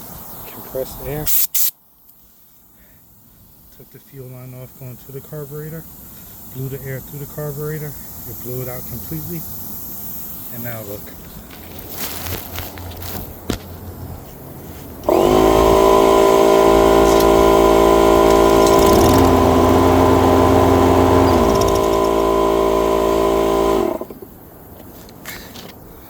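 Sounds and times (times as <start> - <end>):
lawn mower engine starting and running: 14.8 - 24.2.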